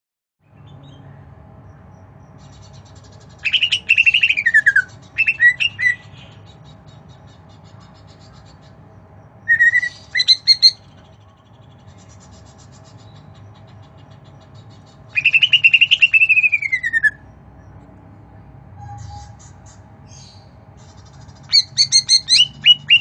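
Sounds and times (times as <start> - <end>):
pet bird chirping: 0.4 - 17.9, 18.7 - 23.0.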